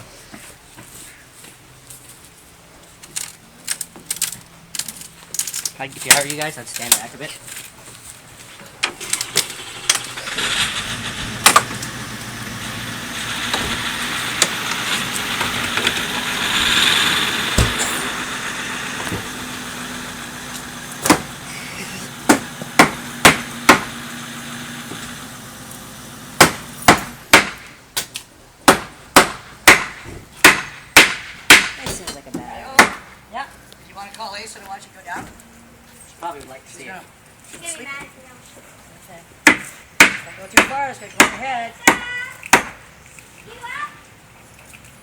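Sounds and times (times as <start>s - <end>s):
hammer striking tree: 11.2s - 25.3s, 26.2s - 33.2s, 39.4s - 42.8s.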